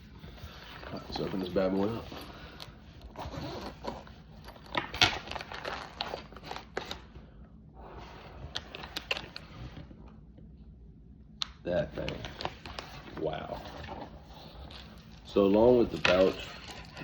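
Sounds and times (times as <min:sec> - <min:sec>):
zipper being pulled: 0:03.1 - 0:04.6.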